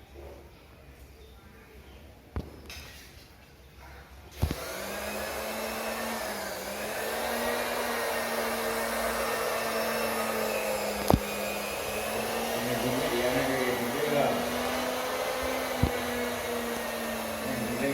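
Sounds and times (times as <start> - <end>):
electric fan whirring: 4.4 - 17.9.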